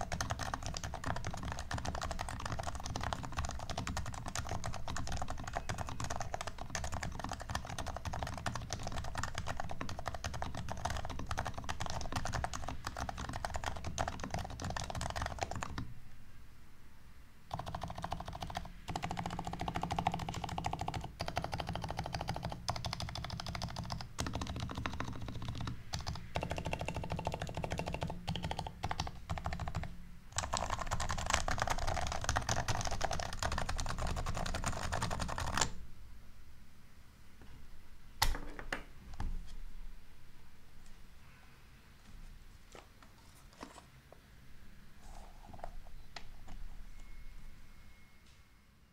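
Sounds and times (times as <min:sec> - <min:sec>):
thocky keyboard keystrokes: 0:00.0 - 0:15.8, 0:17.5 - 0:35.7.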